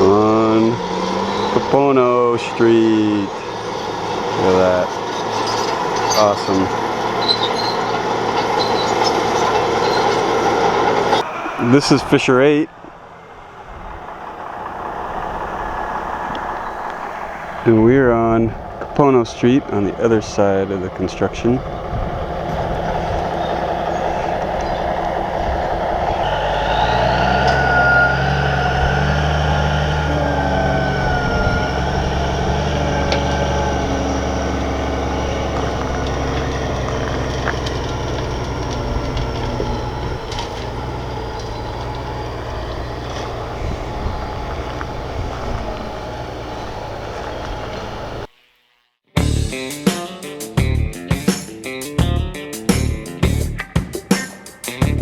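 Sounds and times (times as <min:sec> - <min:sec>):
bulldozer diesel engine: 0:00.0 - 0:48.3, 0:52.0 - 0:53.6
steel tracks squealing: 0:00.0 - 0:48.3
rock crushing: 0:31.6 - 0:43.5.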